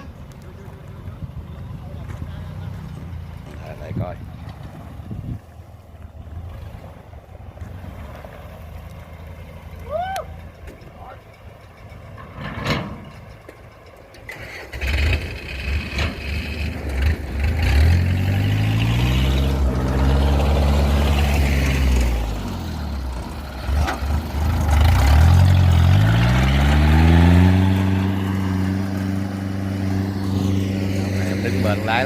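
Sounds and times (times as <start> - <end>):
diesel engine revving: 0.0 - 32.0.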